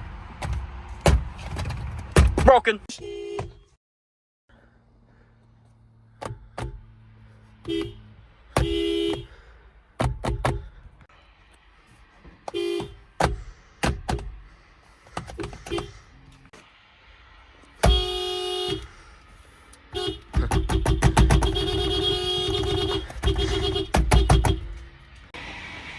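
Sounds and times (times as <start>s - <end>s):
car horn honking: 2.5s - 3.8s, 7.5s - 9.6s, 12.4s - 13.3s, 15.4s - 16.2s, 17.8s - 19.1s, 19.9s - 25.0s.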